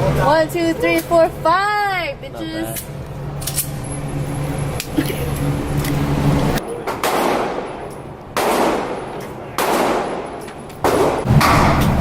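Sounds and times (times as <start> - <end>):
echoing gunshots: 6.9 - 12.0.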